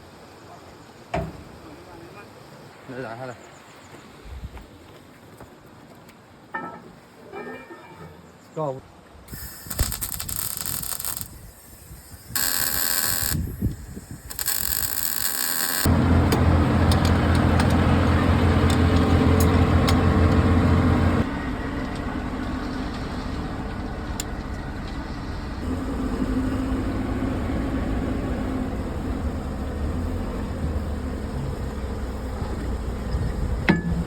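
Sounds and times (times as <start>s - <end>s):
loud hissing bursts: 9.3s - 15.9s
excavator diesel engine running: 15.7s - 33.6s.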